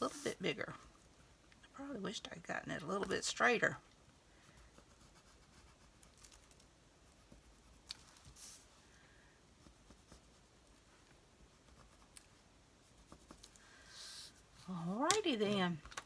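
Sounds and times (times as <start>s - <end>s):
soft rustle: 3.9s - 15.8s.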